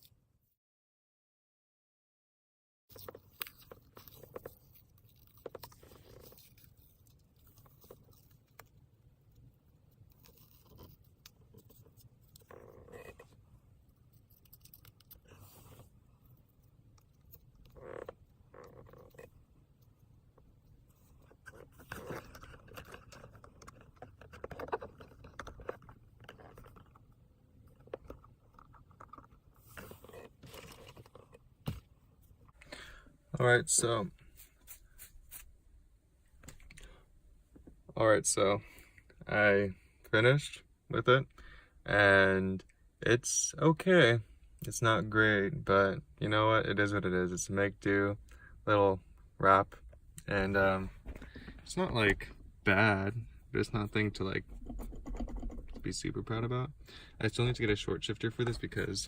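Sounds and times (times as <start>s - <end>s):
soft rustle: 2.9s - 16.8s, 27.8s - 32.6s, 34.1s - 35.6s.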